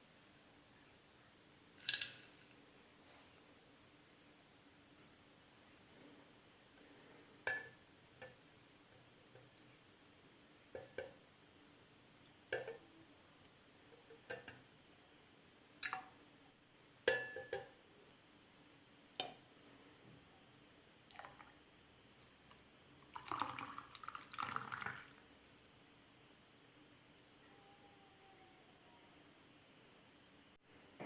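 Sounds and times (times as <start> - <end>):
glassware clinking: 17.1 - 17.7.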